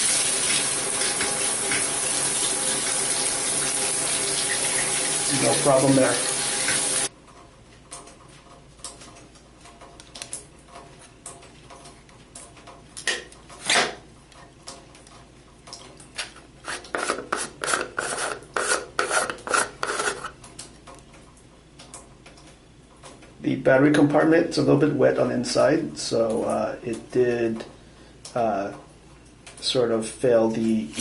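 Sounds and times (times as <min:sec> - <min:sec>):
plastic cap scraping and knocking: 0:16.6 - 0:20.4.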